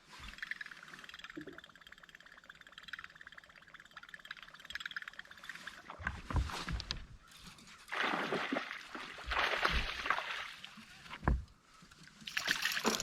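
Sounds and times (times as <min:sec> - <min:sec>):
water splashing and sloshing: 0:00.0 - 0:13.0.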